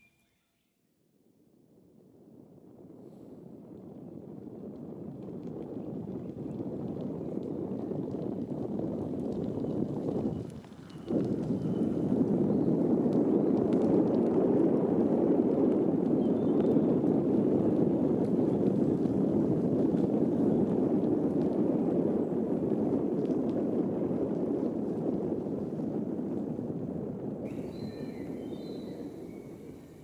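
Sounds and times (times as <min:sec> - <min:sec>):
jet airliner rumbling overhead: 0:27.4 - 0:30.0.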